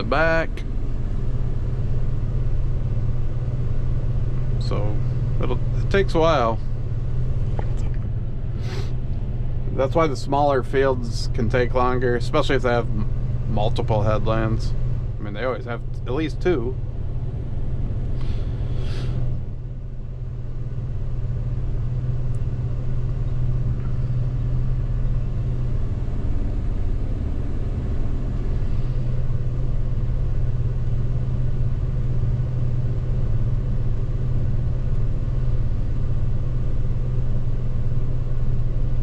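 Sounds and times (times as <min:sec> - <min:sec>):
combine engine drone: 0:00.0 - 0:39.0
short hissy sounds: 0:08.6 - 0:09.0, 0:18.2 - 0:19.2.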